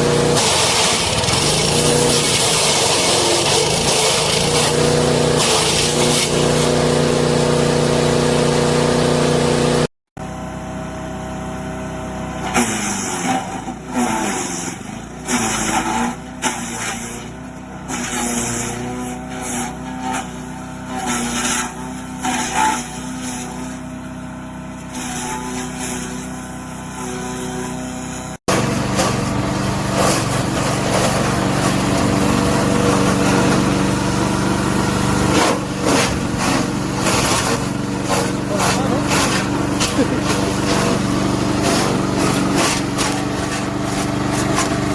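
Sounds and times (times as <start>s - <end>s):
gas engine running: 0.0s - 13.9s, 27.7s - 44.9s.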